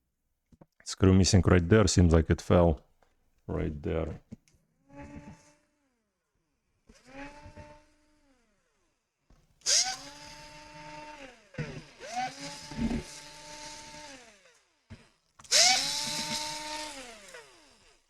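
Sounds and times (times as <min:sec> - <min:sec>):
electric screwdriver motor whine: 0:09.6 - 0:18.0.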